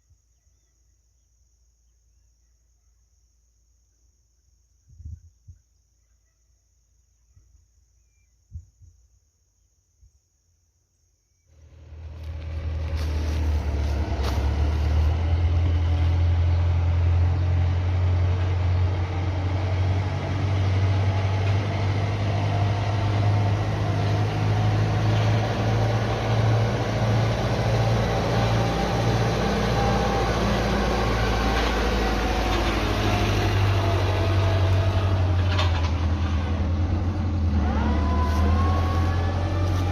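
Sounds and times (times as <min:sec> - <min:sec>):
farm machine engine humming: 0:11.6 - 0:39.9.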